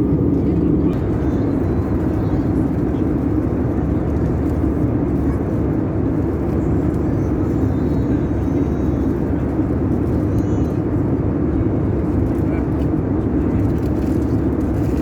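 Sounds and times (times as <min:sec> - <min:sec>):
vehicle cabin rumble: 0:00.0 - 0:10.7.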